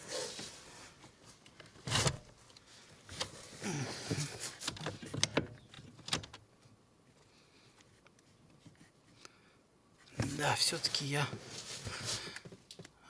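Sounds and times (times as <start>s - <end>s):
car parts clicking and knocking: 4.1s - 6.5s.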